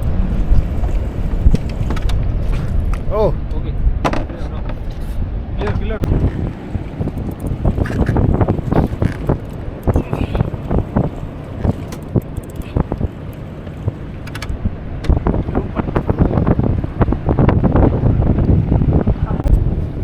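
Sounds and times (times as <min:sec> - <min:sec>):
wind buffeting microphone: 0:00.0 - 0:20.0
scattered knocks and clicks: 0:06.0 - 0:15.2.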